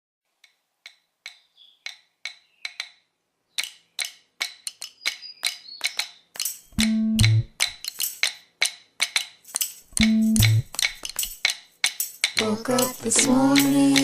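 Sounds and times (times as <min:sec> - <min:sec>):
woodblock-like percussion clicks: 0:00.4 - 0:14.0.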